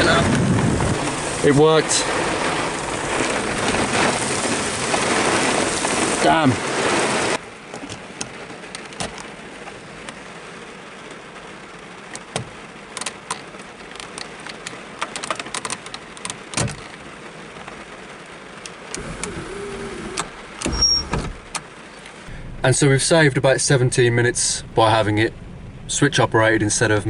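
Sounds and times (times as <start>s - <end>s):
heavy rain falling: 0.0s - 27.0s
electric motor whining: 19.0s - 20.8s.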